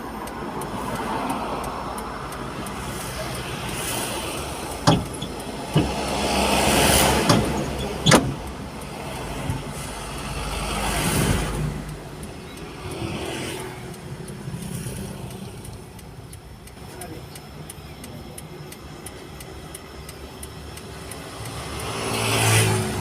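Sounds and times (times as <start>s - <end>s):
vehicles passing by: 0.0s - 23.0s
sharp knocks: 4.8s - 6.3s, 7.0s - 8.5s.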